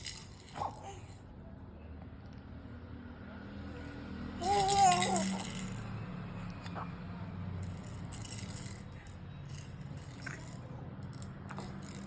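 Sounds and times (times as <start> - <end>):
baby's rattle shaken: 0.0 - 1.2, 4.4 - 6.0, 7.6 - 12.0.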